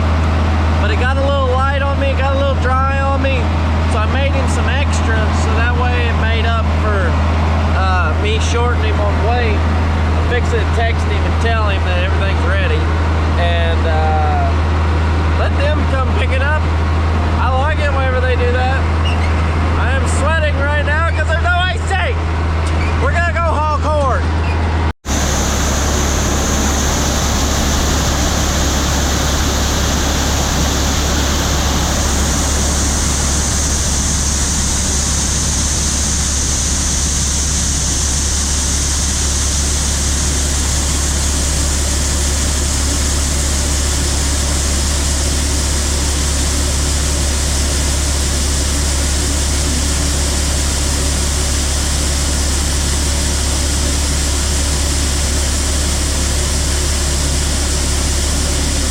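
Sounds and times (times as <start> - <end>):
heavy vehicle engine drone: 0.0 - 58.9
hiss: 25.1 - 46.6.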